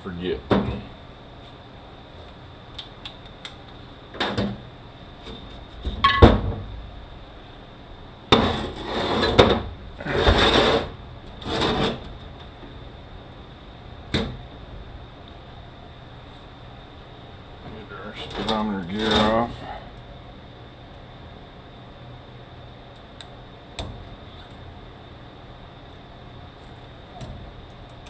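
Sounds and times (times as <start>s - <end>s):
metal parts clanking and scraping: 18.2s - 19.5s.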